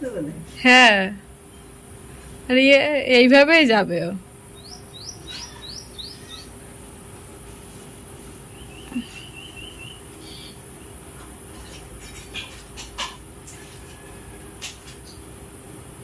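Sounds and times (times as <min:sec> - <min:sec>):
steady background hum: 0:00.0 - 0:16.0
bird chirp: 0:04.5 - 0:06.7, 0:08.4 - 0:11.0
bird warbling trill: 0:04.6 - 0:06.7, 0:08.5 - 0:10.6.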